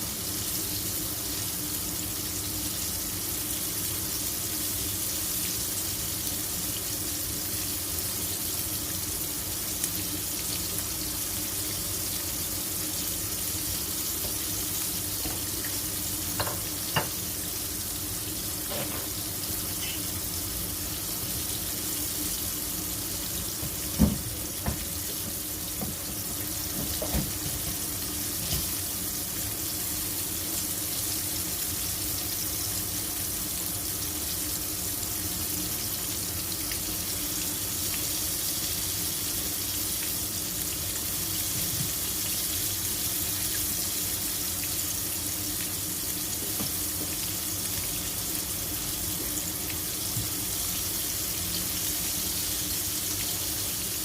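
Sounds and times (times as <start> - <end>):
tap running into sink: 23.6 - 24.9, 25.8 - 27.8.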